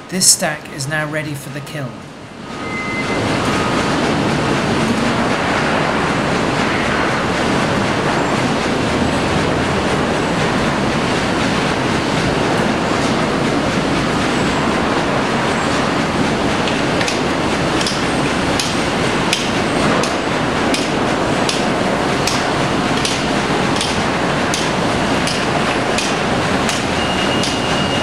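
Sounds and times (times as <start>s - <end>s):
sawmill machinery running: 7.7s - 28.0s.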